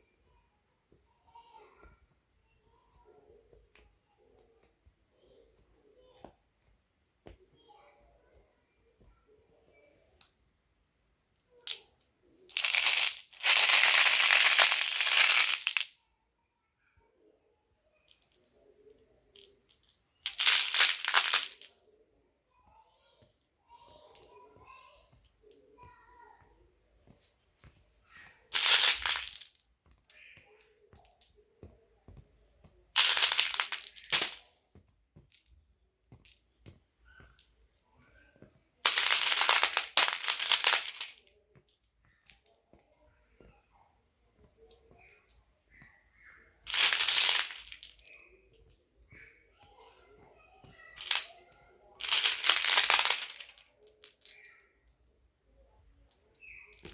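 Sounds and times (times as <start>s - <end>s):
glass marbles clattering: 12.5s - 15.9s, 19.7s - 21.7s, 28.5s - 30.1s, 33.0s - 34.4s, 38.8s - 41.2s, 46.7s - 48.7s, 50.6s - 51.3s, 52.0s - 54.6s, 56.3s - 56.9s.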